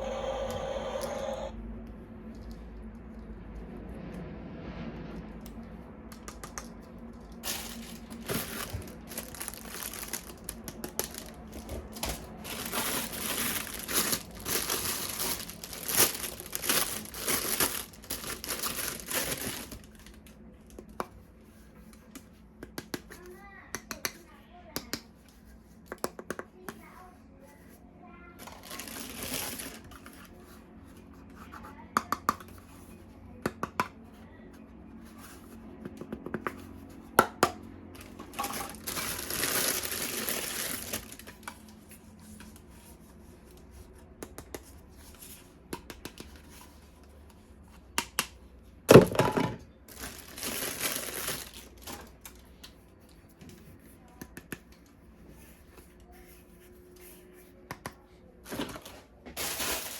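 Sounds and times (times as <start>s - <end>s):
plastic packaging crinkling and tearing: 7.3s - 20.3s, 28.4s - 30.2s, 38.0s - 41.7s, 49.9s - 52.5s, 58.4s - 59.9s.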